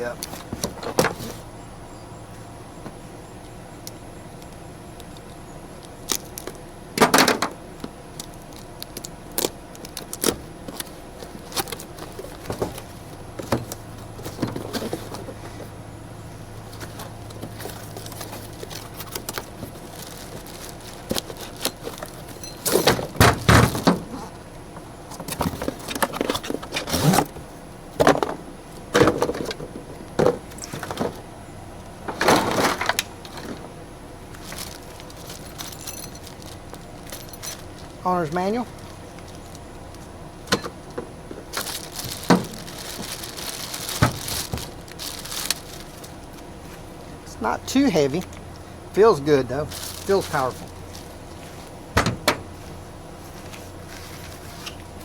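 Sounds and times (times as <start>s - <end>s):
knocks and clunks of packing: 0.2s - 1.5s, 7.0s - 7.6s, 10.2s - 15.7s, 16.6s - 24.4s, 25.1s - 31.2s, 32.0s - 33.8s, 40.4s - 46.2s, 51.9s - 52.6s
cardboard box rustling: 10.6s - 15.7s, 16.7s - 24.4s, 41.0s - 46.8s.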